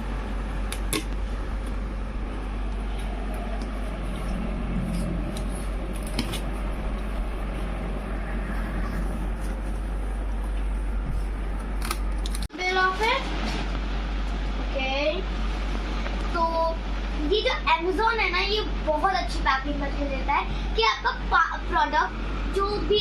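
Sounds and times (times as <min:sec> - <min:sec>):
low hum: 0:00.0 - 0:17.6.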